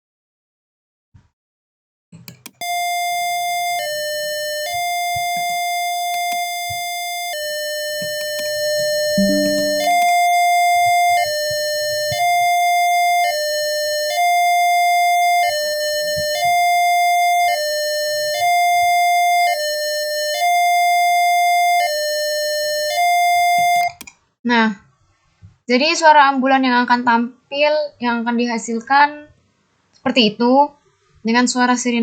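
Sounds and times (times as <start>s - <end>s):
buzzer playing two-tone siren: 2.6s - 24.0s.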